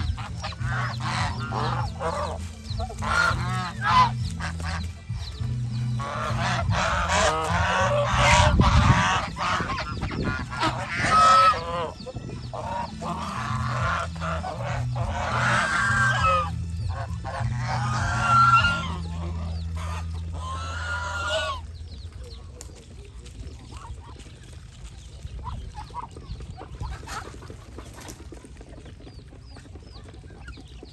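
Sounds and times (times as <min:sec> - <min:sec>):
steady low hum: 0:00.0 - 0:22.2
geese honking: 0:00.0 - 0:30.9.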